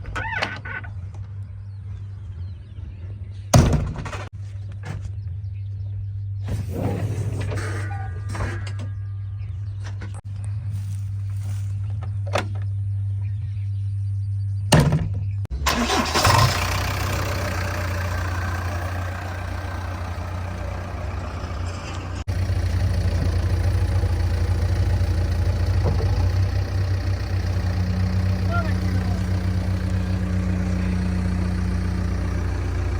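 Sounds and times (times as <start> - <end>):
diesel engine running: 15.5 - 32.9.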